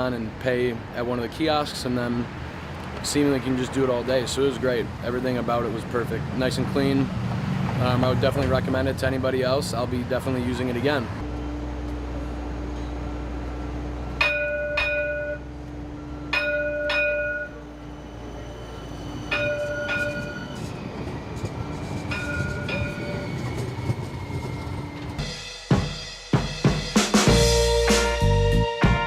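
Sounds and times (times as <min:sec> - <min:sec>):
streetcar rumbling along track: 0:00.0 - 0:25.3
streetcar bell ringing: 0:03.1 - 0:25.3
drum-led music: 0:25.2 - 0:29.0.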